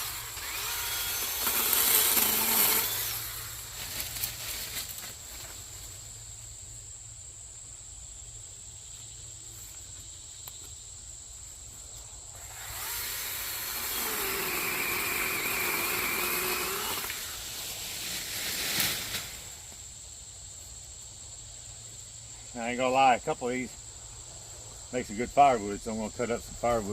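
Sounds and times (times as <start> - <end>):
chainsaw engine revving: 0.0 - 4.2, 12.4 - 18.3
high insect drone: 0.0 - 26.9.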